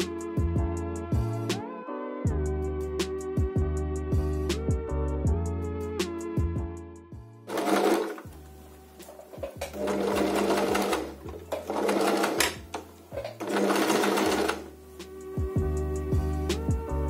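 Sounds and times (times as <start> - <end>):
background music: 0.0 - 17.0
sewing machine stitching: 7.5 - 8.4, 9.1 - 14.8.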